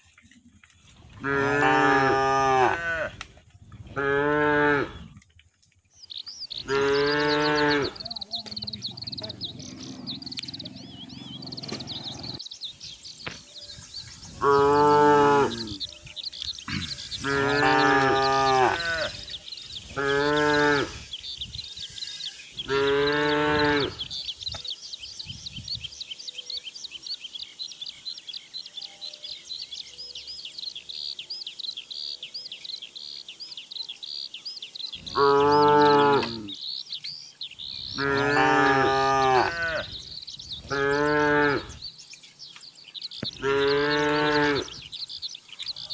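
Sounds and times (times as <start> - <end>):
cows mooing: 1.1 - 3.2, 3.8 - 5.2, 6.6 - 8.5, 14.3 - 15.9, 16.6 - 21.1, 22.6 - 24.1, 35.1 - 36.6, 37.9 - 40.0, 40.6 - 41.8, 43.3 - 44.9
high chirping: 4.9 - 45.9.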